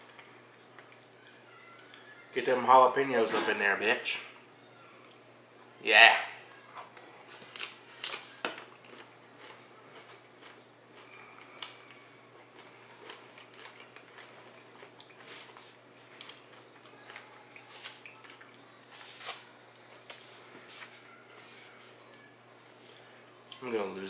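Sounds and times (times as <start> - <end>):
crunching tortilla chips: 6.8 - 21.4.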